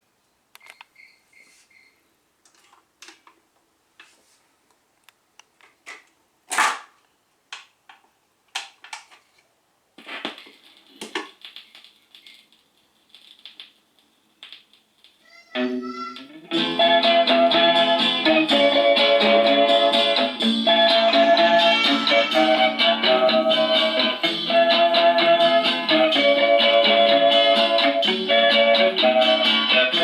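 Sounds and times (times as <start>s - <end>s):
crackling hiss: 9.3s - 16.9s.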